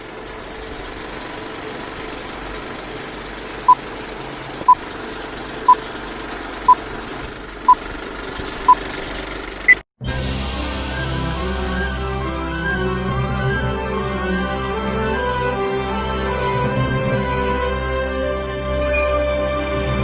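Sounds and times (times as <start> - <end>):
engine-like drone: 0.0 - 20.0
music: 10.0 - 20.0.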